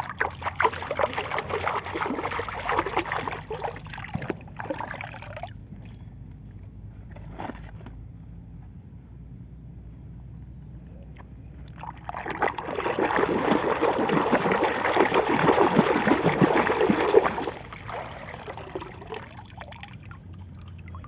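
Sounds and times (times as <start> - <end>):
water pouring and splashing: 0.0 - 5.6, 11.7 - 21.0.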